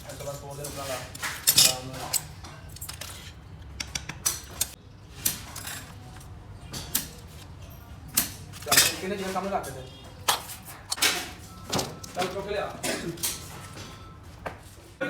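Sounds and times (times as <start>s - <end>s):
metal parts clinking: 0.2s - 3.4s, 4.2s - 6.0s, 8.2s - 9.1s.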